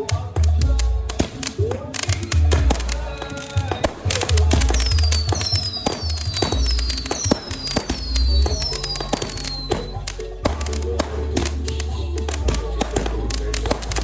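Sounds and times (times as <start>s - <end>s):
music with heavy pulsing bass: 0.0s - 1.6s, 2.3s - 14.0s
fireworks bangs and crackles: 0.0s - 14.0s
falling whistling tones: 2.0s - 12.0s.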